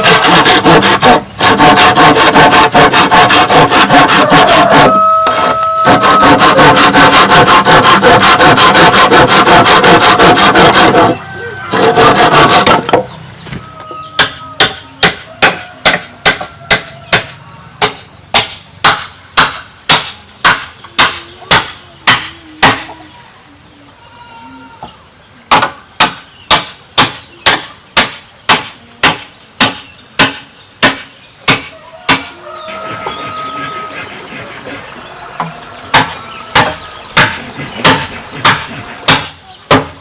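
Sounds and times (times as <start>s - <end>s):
hand tool striking bamboo: 11.8s - 13.1s, 13.9s - 22.8s, 25.5s - 32.3s, 35.4s - 40.0s.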